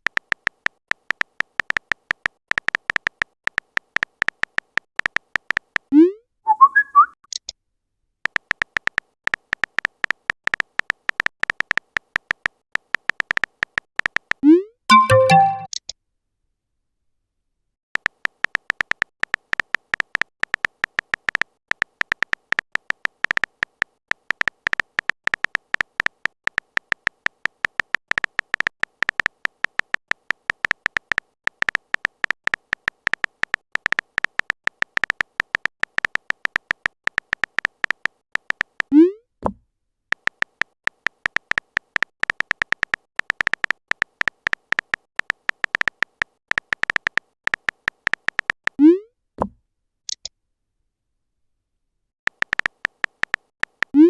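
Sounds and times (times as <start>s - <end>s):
typing sound effect clicking: 0.0s - 7.5s, 8.2s - 15.9s, 18.0s - 39.1s, 40.1s - 49.0s, 52.3s - 54.0s
new message pop: 14.9s - 15.7s.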